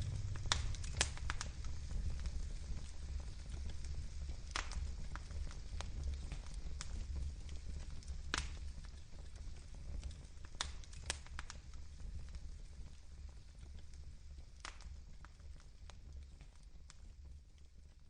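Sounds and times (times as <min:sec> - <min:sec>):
low rumble: 0:00.0 - 0:04.2
wood fire crackling and popping: 0:00.0 - 0:18.0.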